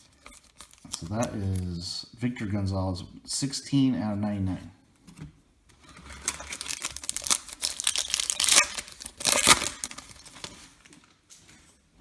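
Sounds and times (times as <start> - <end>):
foil wrapper crinkling and tearing: 0.0 - 1.7, 6.0 - 11.1.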